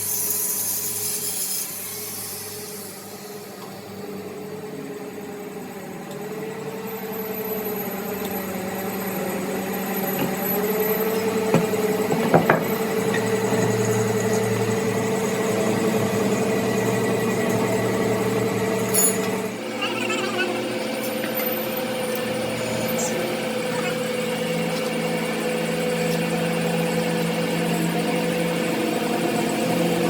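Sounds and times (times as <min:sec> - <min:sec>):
motor-driven machine humming: 0:06.9 - 0:30.0.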